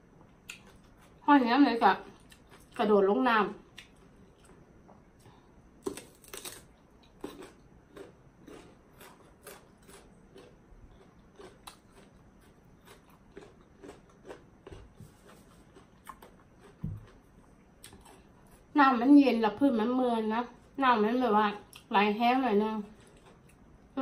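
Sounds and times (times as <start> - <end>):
person chewing crunchy food: 0.4 - 1.2, 2.0 - 2.8, 3.6 - 18.7, 22.9 - 23.6.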